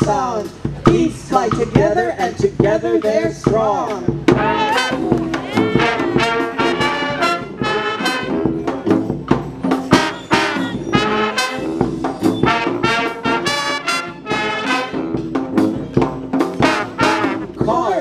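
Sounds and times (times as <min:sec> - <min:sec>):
brass band playing: 0:03.9 - 0:17.8.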